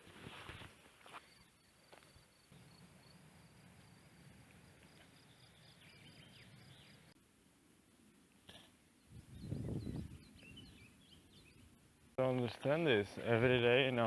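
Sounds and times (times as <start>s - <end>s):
faint rural outdoor ambience: 0.0s - 14.0s
high pulsing insect chirr: 1.0s - 7.2s.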